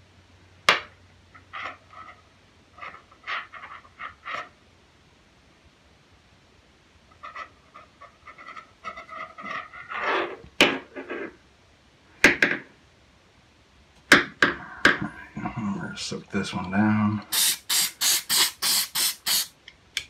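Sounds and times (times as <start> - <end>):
cleaning rod scrubbing gun barrel: 17.3 - 19.5.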